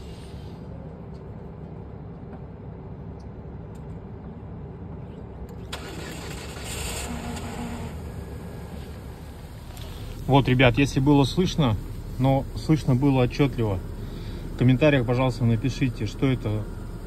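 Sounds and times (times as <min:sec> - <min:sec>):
car engine running: 0:05.6 - 0:17.0.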